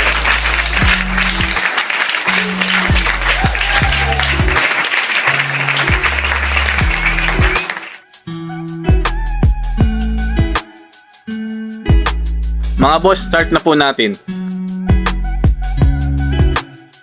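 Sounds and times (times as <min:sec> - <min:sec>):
background music with deep bass: 0:00.0 - 0:01.6, 0:02.3 - 0:04.6, 0:05.4 - 0:13.7, 0:14.3 - 0:17.0
dense applause-like hiss: 0:00.0 - 0:08.1.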